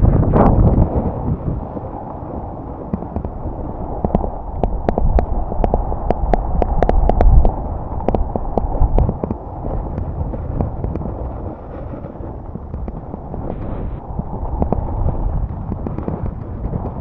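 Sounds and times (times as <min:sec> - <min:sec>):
wind rumbling on microphone: 0:00.0 - 0:17.0
snowboard scraping on snow: 0:08.7 - 0:17.0.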